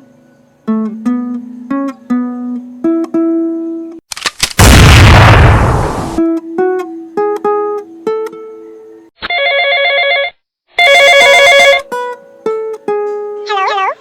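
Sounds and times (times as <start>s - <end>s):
loud burst of noise: 4.6s - 6.2s
telephone ringing: 9.3s - 11.9s
plucked guitar notes: 11.8s - 13.8s.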